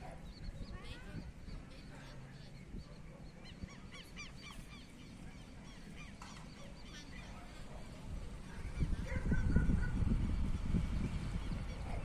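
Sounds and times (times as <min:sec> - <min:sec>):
birds chirping: 0:00.0 - 0:12.0.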